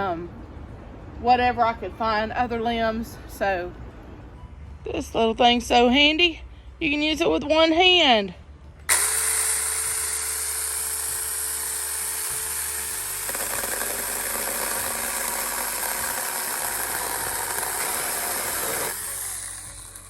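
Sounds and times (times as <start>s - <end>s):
electric chainsaw cutting: 8.9s - 20.0s.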